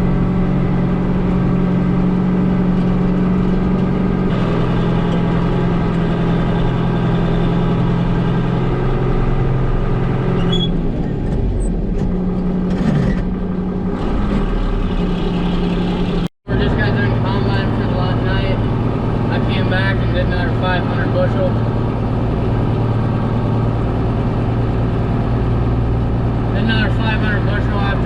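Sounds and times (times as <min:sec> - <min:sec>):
harvester engine running: 0:00.0 - 0:28.0.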